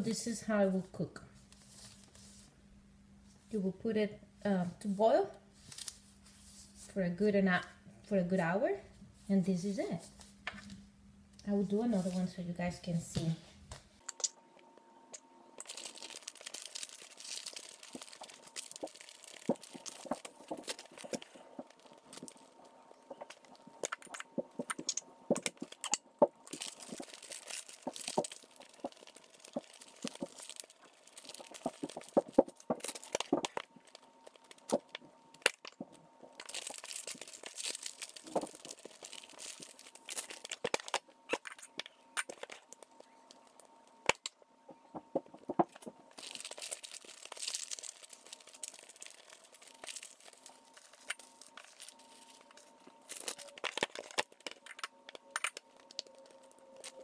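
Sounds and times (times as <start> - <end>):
wrapping crinkling and rustling: 1.5 - 2.5, 5.6 - 7.0, 15.6 - 57.0.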